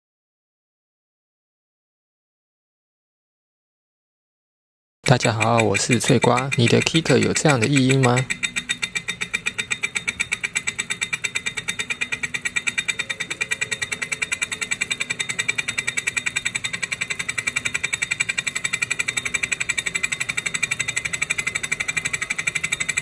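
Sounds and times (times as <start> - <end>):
bike trainer mechanical ticking: 5.0 - 23.0.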